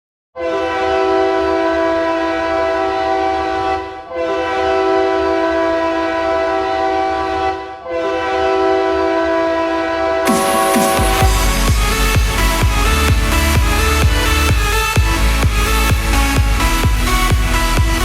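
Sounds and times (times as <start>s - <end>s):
multi-tone horn blasts: 0.4s - 18.0s
low rumble: 10.9s - 18.0s.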